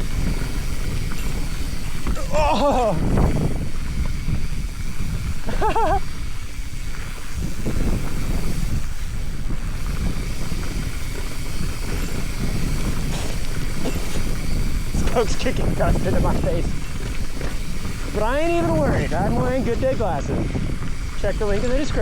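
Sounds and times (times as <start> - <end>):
mountain bike rattling on trail: 0.0 - 22.0
wind buffeting microphone: 0.0 - 22.0
wavering vocal cry: 2.2 - 3.1.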